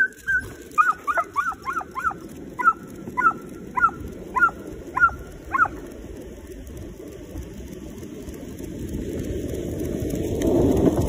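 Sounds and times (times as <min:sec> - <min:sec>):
dog yipping and whimpering: 0:00.0 - 0:05.7
steady rumbling noise: 0:00.0 - 0:11.0.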